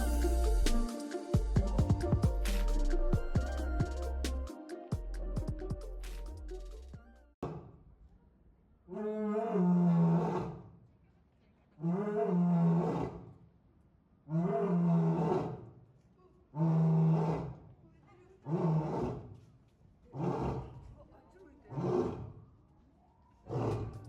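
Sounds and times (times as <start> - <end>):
lion roaring: 8.9 - 10.6, 11.8 - 13.2, 14.3 - 15.6, 20.1 - 20.8, 21.7 - 22.4, 23.4 - 24.0.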